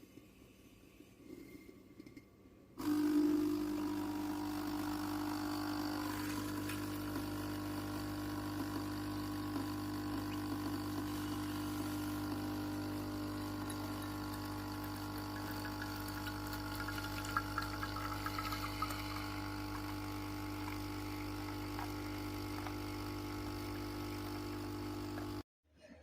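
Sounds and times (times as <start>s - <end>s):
espresso machine pump humming: 2.8s - 25.4s
faint liquid sounds: 12.0s - 21.7s.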